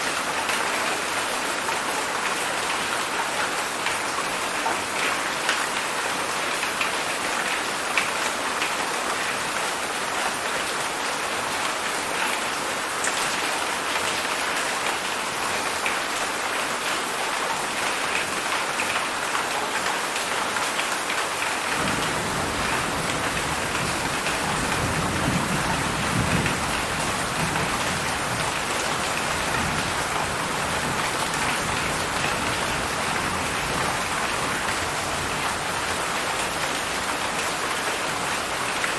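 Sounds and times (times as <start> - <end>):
heavy rain falling: 0.0 - 38.9
low rumble of thunder: 21.8 - 28.6.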